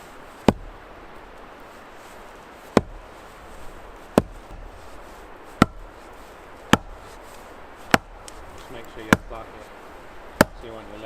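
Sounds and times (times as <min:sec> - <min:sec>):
axe striking log: 0:00.4 - 0:00.8, 0:02.7 - 0:03.2, 0:04.1 - 0:04.9, 0:05.5 - 0:09.5, 0:10.1 - 0:10.7
log smacked onto chopping block: 0:00.4 - 0:00.8, 0:02.8 - 0:03.0, 0:04.1 - 0:04.7, 0:05.5 - 0:06.0, 0:06.7 - 0:09.4, 0:10.3 - 0:10.7.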